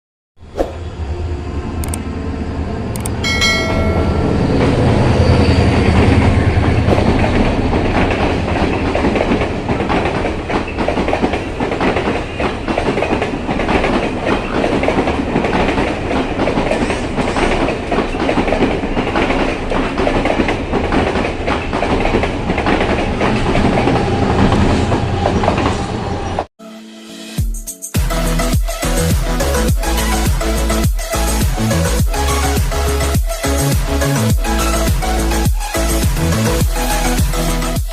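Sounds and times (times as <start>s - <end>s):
wheels clacking over rail joints: 5.8s - 26.5s.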